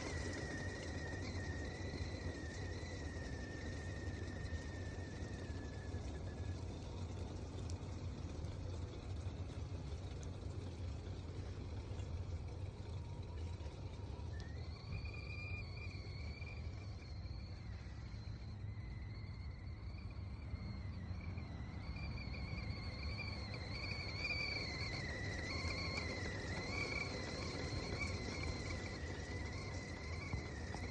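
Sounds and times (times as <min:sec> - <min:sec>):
steam whistling: 0:00.0 - 0:07.6, 0:13.9 - 0:30.9
low steady rumble: 0:00.0 - 0:30.9.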